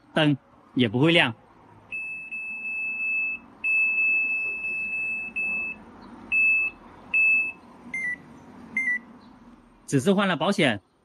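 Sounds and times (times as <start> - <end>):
washing machine panel beeps: 1.9 - 8.2, 8.8 - 9.1.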